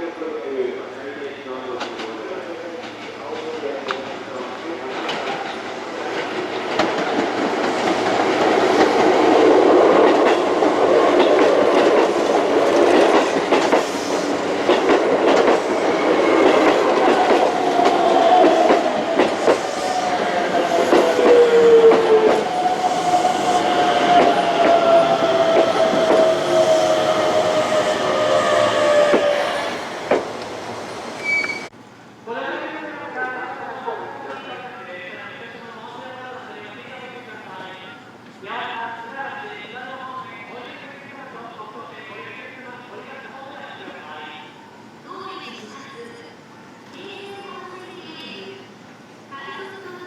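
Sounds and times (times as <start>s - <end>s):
train wheels clicking on rails: 4.8s - 31.7s.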